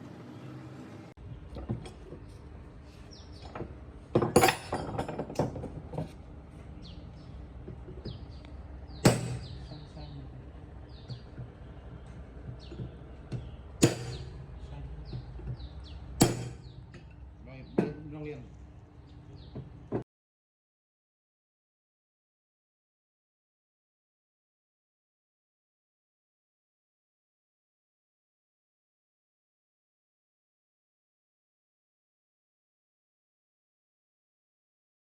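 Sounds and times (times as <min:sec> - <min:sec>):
small birds chirping: 0:01.2 - 0:03.8, 0:06.5 - 0:20.0
sharp workshop knocks: 0:03.4 - 0:06.2, 0:09.0 - 0:09.8, 0:11.0 - 0:14.4, 0:15.0 - 0:18.1.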